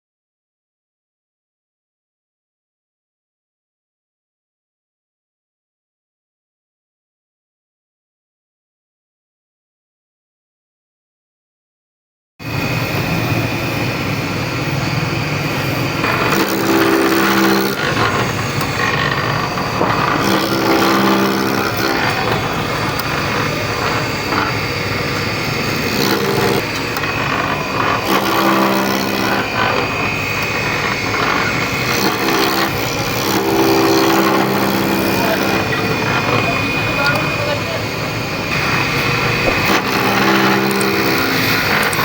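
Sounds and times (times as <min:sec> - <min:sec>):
wood lathe cutting wood: 0:12.5 - 0:42.0.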